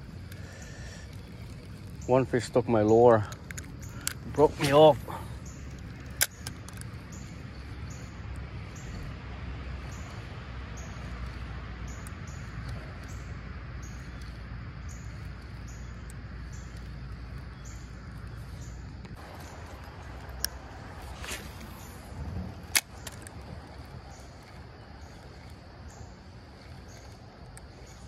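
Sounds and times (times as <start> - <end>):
creek water flowing: 7.1 - 28.0.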